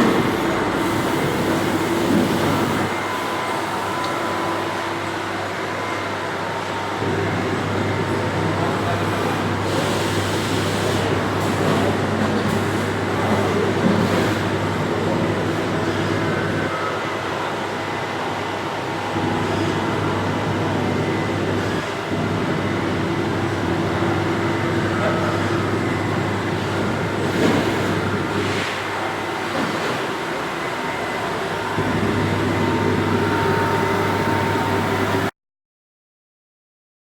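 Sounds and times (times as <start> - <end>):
machine hum: 19.0 - 35.3.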